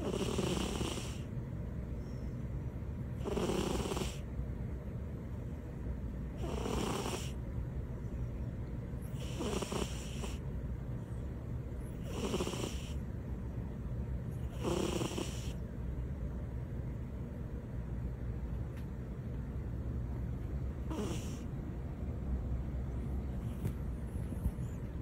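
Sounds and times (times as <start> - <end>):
cat snoring: 0.0 - 1.3, 3.2 - 4.3, 6.3 - 7.4, 9.0 - 10.5, 11.8 - 13.0, 14.4 - 15.6, 20.8 - 21.5.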